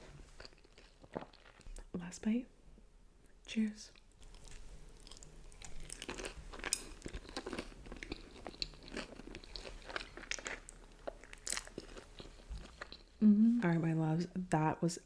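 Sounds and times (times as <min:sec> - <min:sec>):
person chewing crunchy food: 0:00.2 - 0:01.9, 0:04.0 - 0:13.2.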